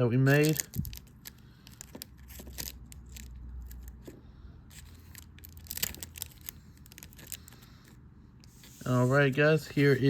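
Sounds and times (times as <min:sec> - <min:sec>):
packaging crinkling and rustling: 0:00.0 - 0:08.0.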